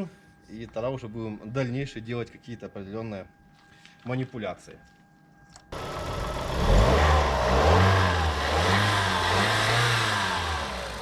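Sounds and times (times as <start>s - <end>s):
car engine revving: 5.8s - 11.0s.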